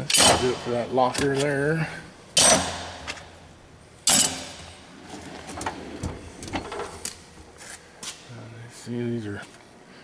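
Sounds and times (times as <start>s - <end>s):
metal parts clicking and rattling: 4.1s - 4.7s
tools clanking in steel toolbox: 4.1s - 4.7s.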